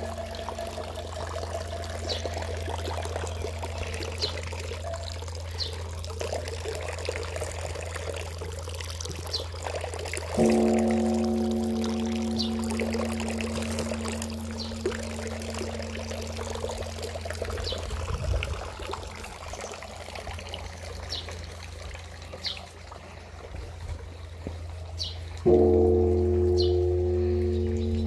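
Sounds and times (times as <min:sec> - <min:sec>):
large temple bell ringing: 0:00.0 - 0:05.9, 0:10.2 - 0:20.8, 0:25.4 - 0:28.0
water trickling: 0:00.0 - 0:28.0.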